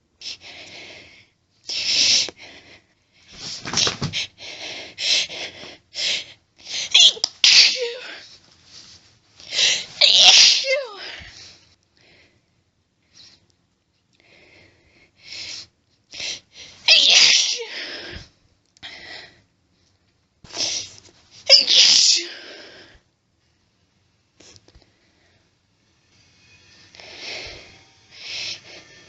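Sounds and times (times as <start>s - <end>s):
woman sneezing: 6.9s - 8.2s, 10.0s - 11.1s, 16.9s - 17.8s, 21.5s - 22.4s.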